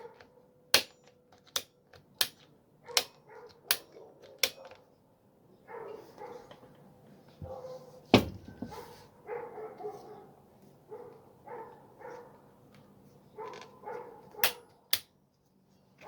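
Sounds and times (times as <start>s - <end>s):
dog barking: 0.0s - 0.4s, 2.8s - 4.7s, 5.7s - 6.6s, 7.4s - 8.0s, 8.6s - 12.4s, 13.4s - 14.6s.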